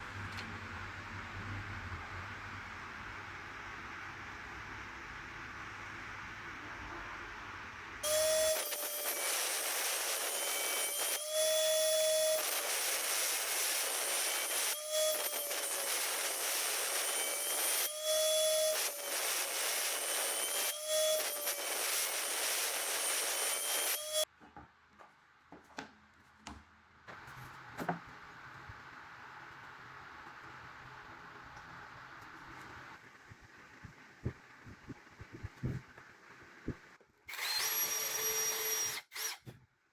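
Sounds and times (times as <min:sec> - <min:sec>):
electric saw cutting wood: 0:08.0 - 0:24.3, 0:37.3 - 0:39.4.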